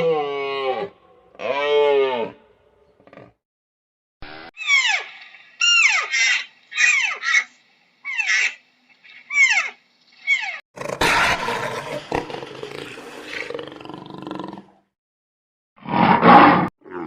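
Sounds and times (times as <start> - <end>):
high falling calls: 4.6 - 10.6
big cat roaring: 10.8 - 14.8, 15.9 - 17.0.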